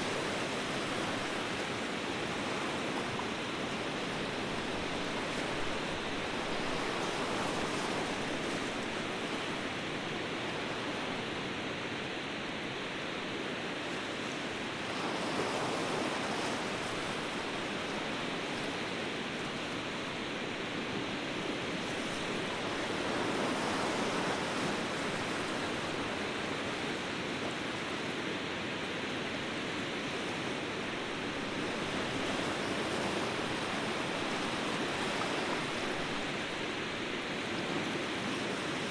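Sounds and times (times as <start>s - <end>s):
waves breaking: 0.0s - 38.9s.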